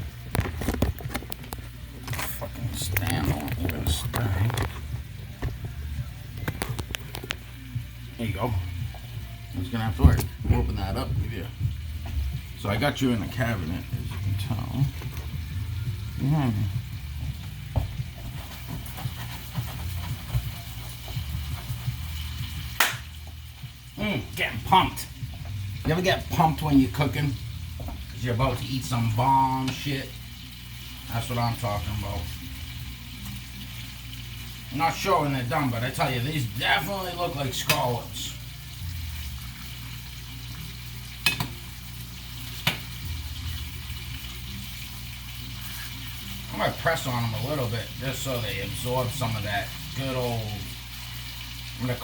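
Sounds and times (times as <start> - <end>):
fish sizzling in a pan: 0.0 - 52.0.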